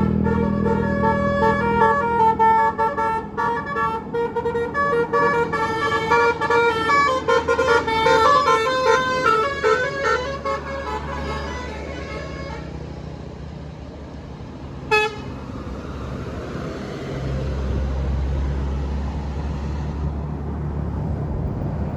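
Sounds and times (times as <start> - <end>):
musical bus horn tune: 0.0 - 13.0, 14.9 - 15.4
low engine hum: 0.0 - 21.9.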